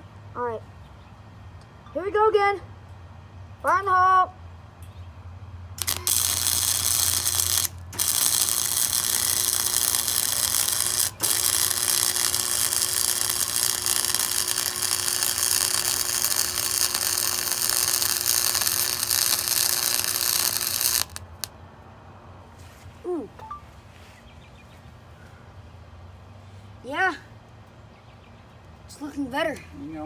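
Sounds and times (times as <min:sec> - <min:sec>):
welder arc crackling: 0:05.8 - 0:21.5.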